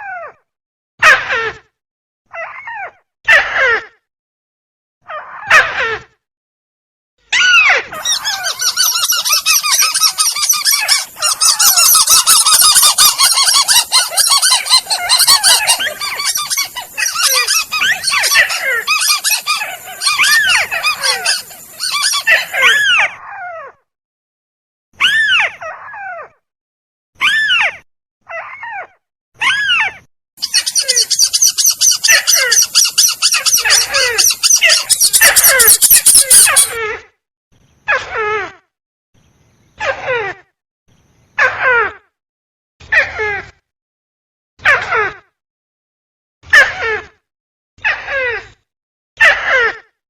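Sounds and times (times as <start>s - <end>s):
crake calls: 8.0s - 23.0s, 30.4s - 36.8s.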